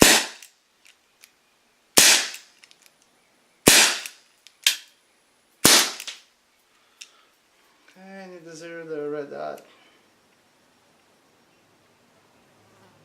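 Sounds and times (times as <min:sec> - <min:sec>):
air pistol shots cracking: 0:00.0 - 0:00.5, 0:02.0 - 0:02.5, 0:03.6 - 0:04.8, 0:05.6 - 0:06.2.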